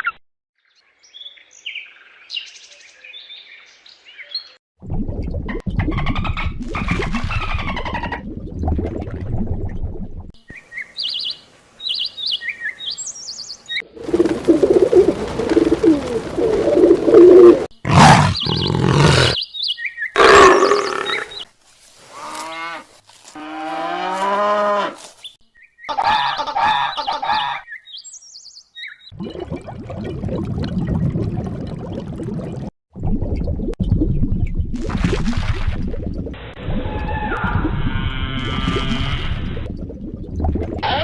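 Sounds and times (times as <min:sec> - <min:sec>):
large animal calls: 0:17.3 - 0:19.4, 0:20.2 - 0:21.4
bird chirps: 0:18.1 - 0:21.4, 0:25.2 - 0:29.1.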